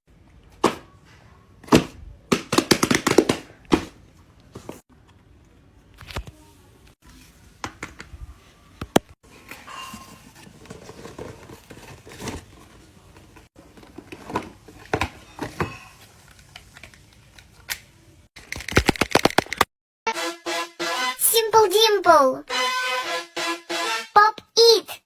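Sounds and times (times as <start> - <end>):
crinkling and rustling: 9.3 - 17.7
sharp clicks and snaps: 16.3 - 19.7.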